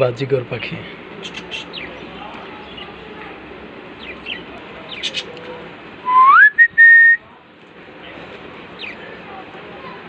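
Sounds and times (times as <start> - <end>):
budgerigars chirping: 1.2 - 2.1
loud whistled note: 6.1 - 7.2.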